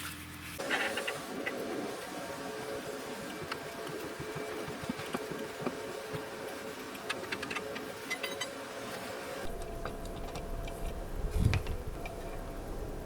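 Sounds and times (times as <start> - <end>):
low rumble: 9.5 - 13.0.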